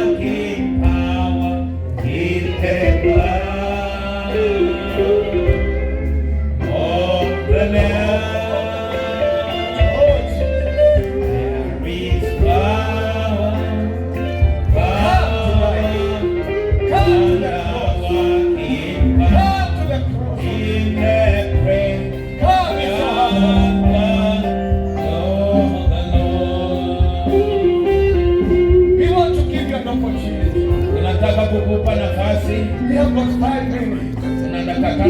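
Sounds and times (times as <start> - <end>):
gospel singing with accompaniment: 0.0 - 35.0
steady bass line: 0.0 - 35.0.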